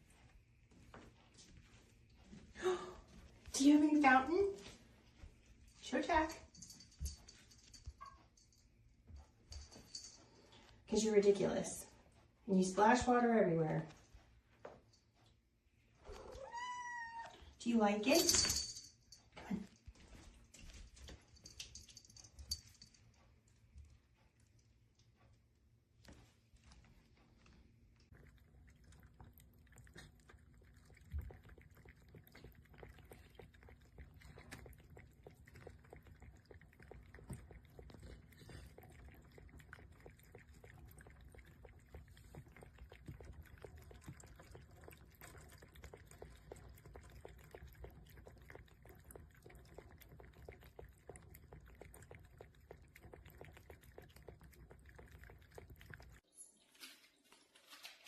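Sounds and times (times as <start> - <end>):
cat lapping water: 27.8 - 56.2
water trickling: 28.1 - 56.4.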